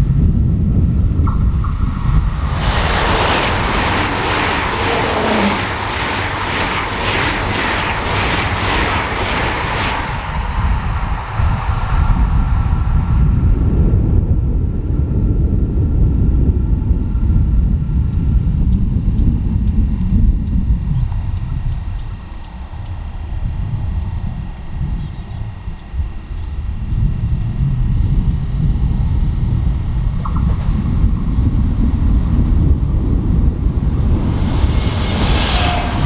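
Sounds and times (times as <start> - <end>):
wind on microphone: 0.0 - 36.0
train passing at speed: 1.3 - 13.9, 32.0 - 36.0.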